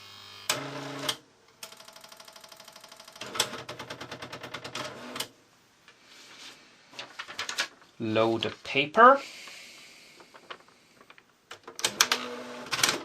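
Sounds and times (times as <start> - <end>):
typewriter motor buzz: 0.0 - 3.7, 11.8 - 13.0.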